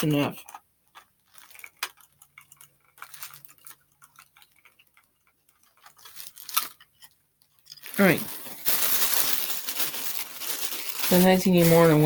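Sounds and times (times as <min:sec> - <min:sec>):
plastic toy clicking: 0:00.4 - 0:07.0.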